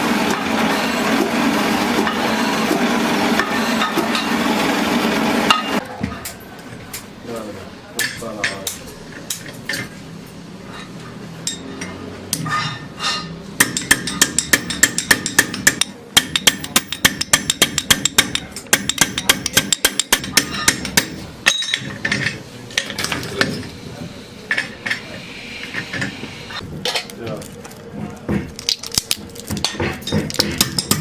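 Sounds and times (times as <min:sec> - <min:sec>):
hammer striking sheet metal: 0:00.3 - 0:04.4, 0:05.5 - 0:05.8, 0:12.4 - 0:21.9, 0:29.6 - 0:31.0.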